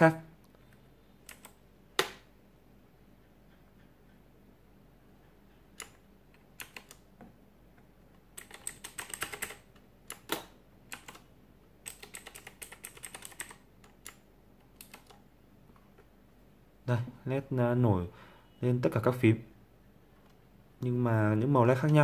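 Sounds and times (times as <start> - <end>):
mechanical keyboard keys clicking: 1.2 - 2.2, 5.6 - 7.1, 8.3 - 15.2.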